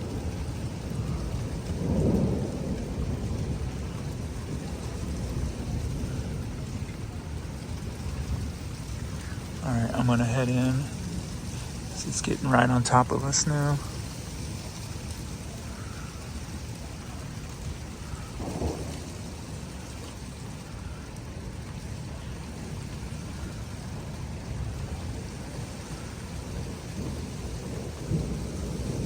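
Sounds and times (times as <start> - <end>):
low thunder rumbling: 0.0 - 29.0
steady rain: 0.0 - 29.0.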